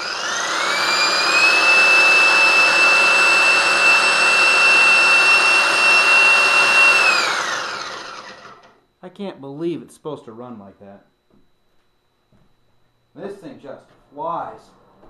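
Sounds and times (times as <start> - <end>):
paint sprayer motor whine: 0.0 - 8.8.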